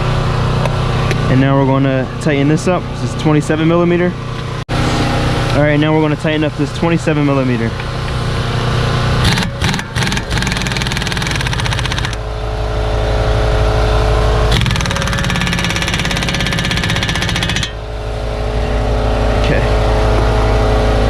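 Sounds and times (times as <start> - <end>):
impact wrench hammering: 9.2 - 12.2, 14.5 - 17.8.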